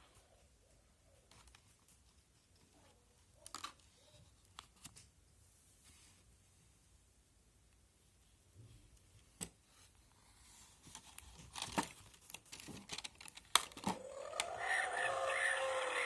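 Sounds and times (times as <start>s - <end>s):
paper pages rustling and crinkling: 10.5s - 14.0s.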